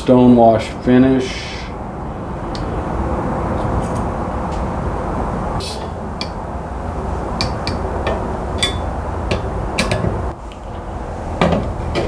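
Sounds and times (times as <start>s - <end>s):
low background rumble: 4.2s - 12.0s.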